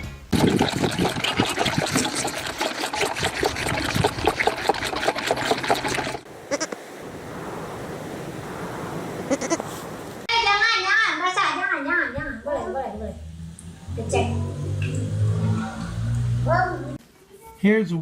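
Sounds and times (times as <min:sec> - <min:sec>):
young livestock bleating: 0:06.5 - 0:06.8, 0:09.3 - 0:09.7.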